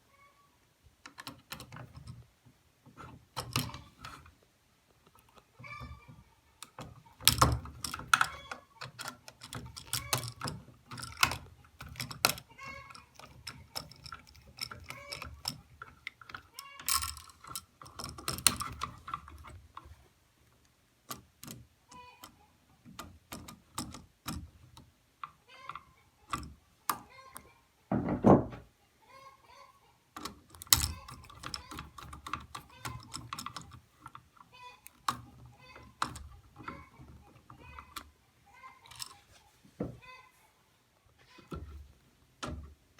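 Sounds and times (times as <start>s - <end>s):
hand tools clicking and knocking: 1.0s - 4.3s, 5.0s - 20.0s, 21.1s - 27.5s, 30.2s - 39.3s.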